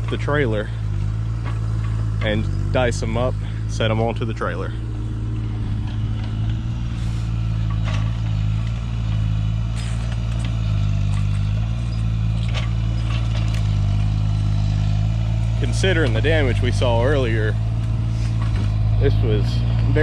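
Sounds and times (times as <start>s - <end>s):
excavator engine running under load: 0.0s - 20.0s.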